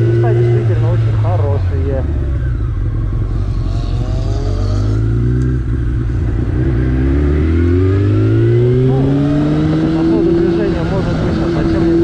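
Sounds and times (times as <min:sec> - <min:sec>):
motorcycle engine accelerating: 0:00.0 - 0:12.0.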